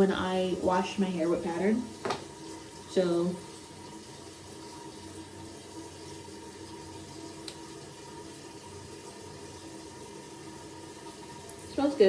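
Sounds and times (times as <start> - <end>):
toilet cistern refilling: 0.0 - 12.0.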